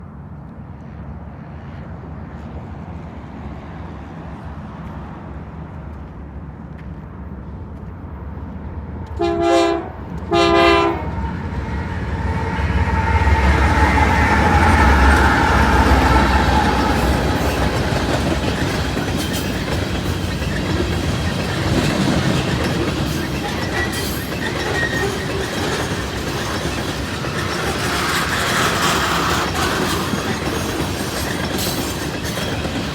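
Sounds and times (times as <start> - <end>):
diesel locomotives rumbling: 0.1 - 32.9
wheel and rail noise: 0.1 - 32.9
train horn blasts: 9.2 - 11.5, 12.2 - 18.0.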